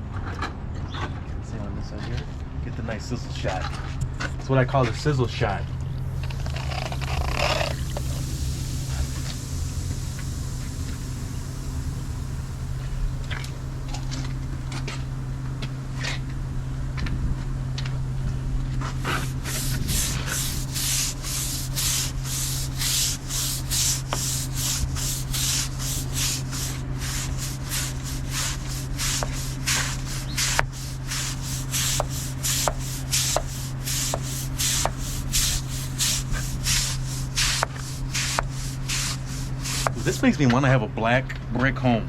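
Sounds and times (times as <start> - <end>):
low hum: 2.5 - 40.4
stiff brush scrubbing brick: 4.8 - 16.3, 18.8 - 40.4.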